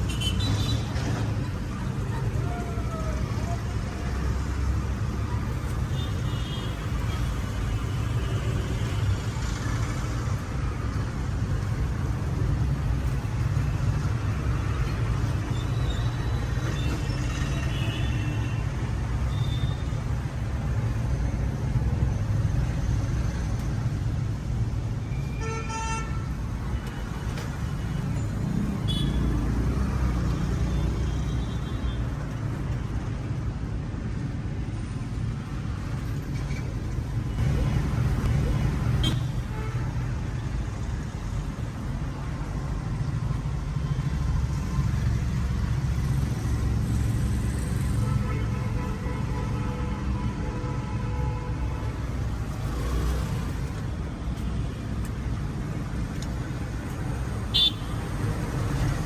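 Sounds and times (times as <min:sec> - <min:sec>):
car horns tooting: 0:57.5 - 0:57.9.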